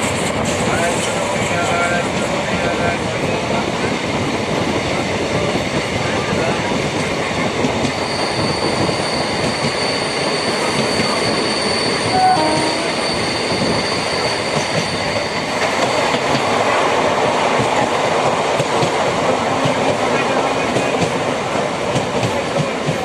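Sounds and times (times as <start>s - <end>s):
electric train rumbling on track: 0.0s - 23.0s
wheels squealing against rails: 7.9s - 16.7s.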